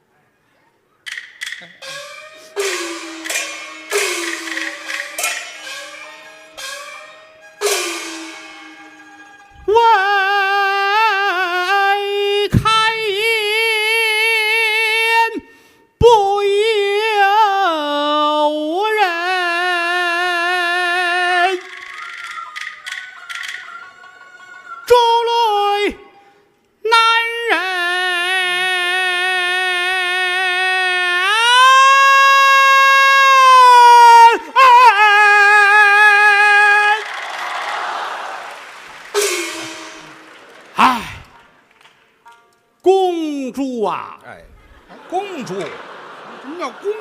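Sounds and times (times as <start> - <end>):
sharp wooden knocks: 1.1 - 1.8
opera singing with vibrato: 9.6 - 15.4, 16.0 - 26.2, 26.8 - 37.1
audience applause: 36.7 - 42.2
high held opera singing note: 39.2 - 41.4.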